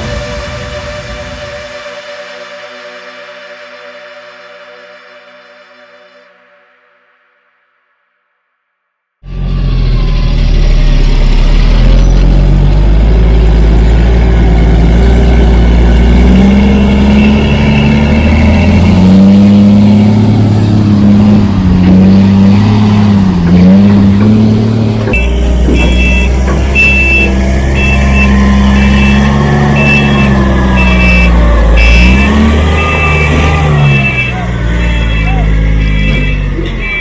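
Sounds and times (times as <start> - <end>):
truck diesel engine running: 9.2 - 37.0
reversing alarm beeping: 25.1 - 37.0.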